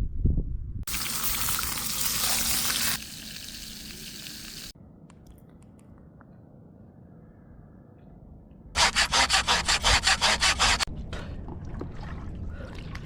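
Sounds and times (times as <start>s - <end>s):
loud even hiss: 0.9s - 4.8s.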